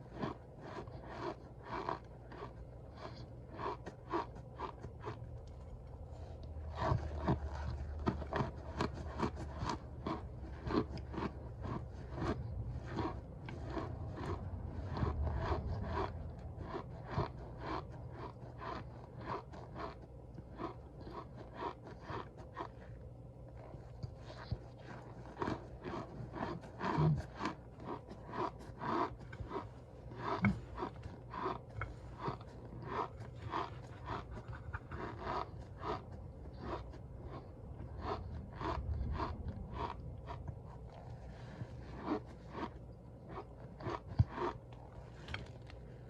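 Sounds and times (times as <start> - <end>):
cornstarch crunching and squeaking: 0.0 - 5.4, 24.1 - 41.0, 41.9 - 45.8.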